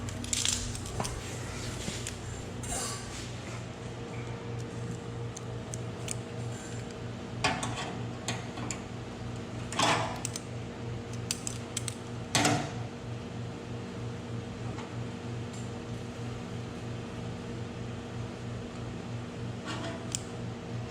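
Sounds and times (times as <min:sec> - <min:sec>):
steady hum: 0:00.0 - 0:07.3.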